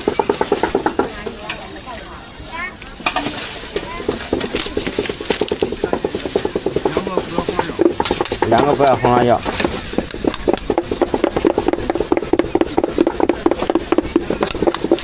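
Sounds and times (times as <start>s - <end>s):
cleaver chopping on wooden block: 5.3s - 15.0s.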